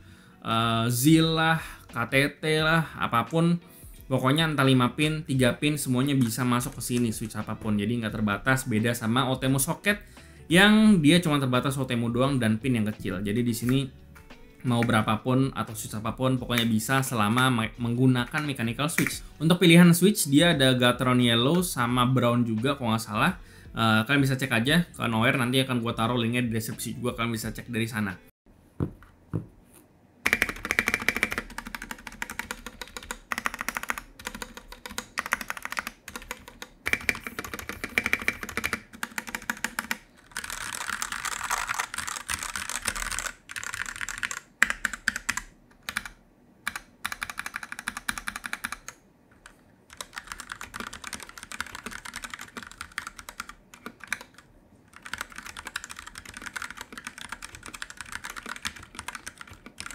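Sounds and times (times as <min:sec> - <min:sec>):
muted mechanical keyboard typing: 0:04.5 - 0:09.6, 0:30.2 - 0:59.9.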